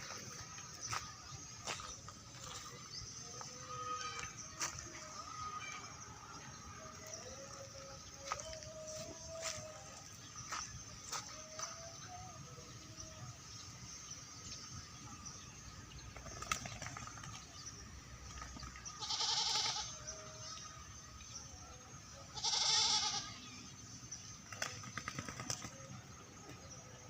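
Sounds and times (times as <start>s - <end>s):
goat bleating: 19.0s - 19.9s, 22.4s - 23.4s.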